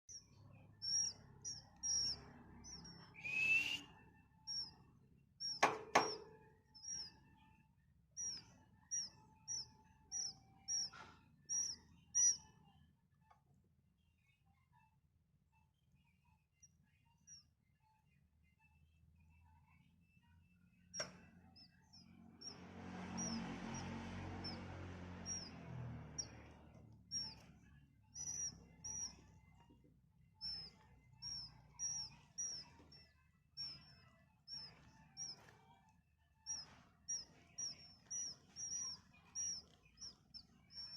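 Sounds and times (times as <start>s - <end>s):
bird chicks chirping: 0.0s - 7.6s, 8.2s - 12.6s, 20.9s - 40.9s.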